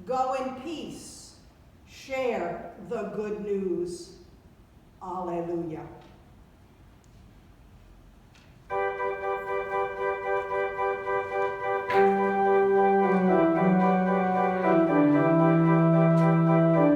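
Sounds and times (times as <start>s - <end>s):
church organ chords: 8.7s - 16.9s
organ bass line: 8.7s - 16.9s.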